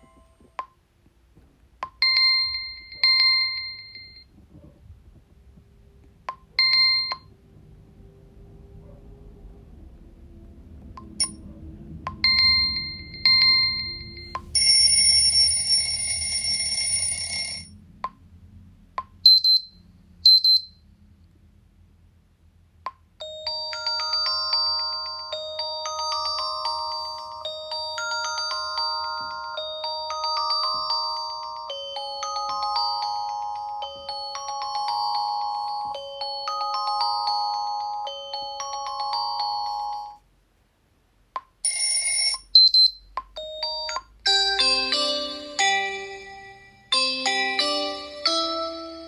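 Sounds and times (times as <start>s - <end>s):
marimba-like ringtone melody: 12.1s - 17.7s, 23.2s - 40.2s, 41.6s - 49.0s
loud high beeps: 12.2s - 16.2s
buzzing alarm tone: 25.8s - 36.3s
short electronic beeps: 42.6s - 43.1s.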